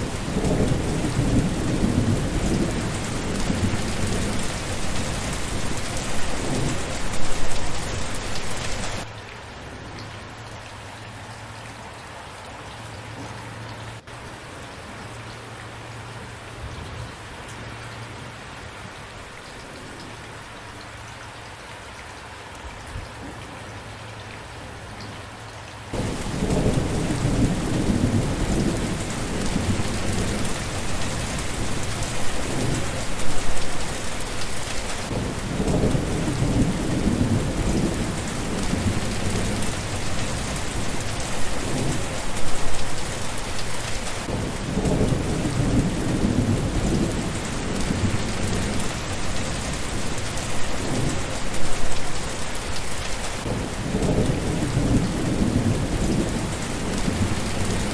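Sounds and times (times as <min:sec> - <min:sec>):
low thunder rumbles: 0:00.0 - 0:09.1, 0:26.0 - 0:57.9
heavy rain: 0:00.0 - 0:57.9.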